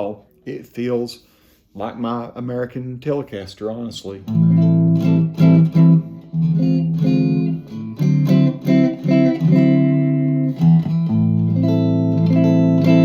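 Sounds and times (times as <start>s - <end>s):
electric guitar chords and notes: 4.2s - 13.0s.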